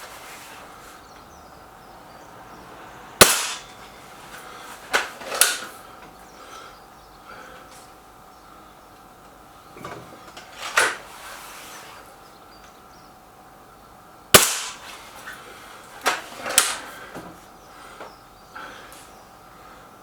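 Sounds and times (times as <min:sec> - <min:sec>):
air rifle cracks: 0:03.2 - 0:03.7, 0:04.9 - 0:05.8, 0:14.4 - 0:15.0, 0:16.1 - 0:16.9.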